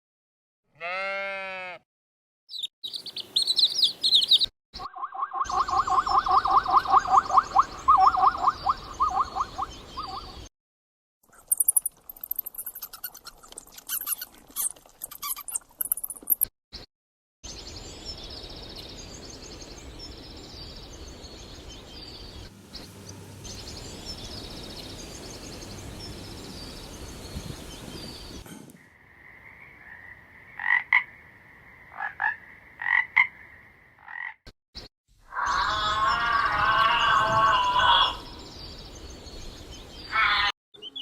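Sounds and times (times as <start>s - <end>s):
loud short animal calls: 0.8s - 1.8s
steady noisy background: 22.5s - 27.7s
animal chorus of high trills: 35.3s - 38.4s.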